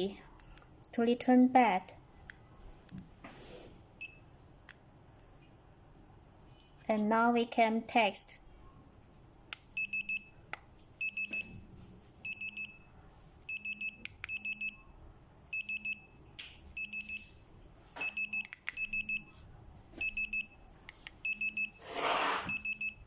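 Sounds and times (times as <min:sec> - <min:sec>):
pager watch beeping: 0:09.8 - 0:10.4, 0:11.0 - 0:11.5, 0:12.2 - 0:12.9, 0:13.5 - 0:14.9, 0:15.5 - 0:16.2, 0:16.8 - 0:17.3, 0:18.0 - 0:19.4, 0:20.0 - 0:20.6, 0:21.2 - 0:21.8, 0:22.5 - 0:23.0.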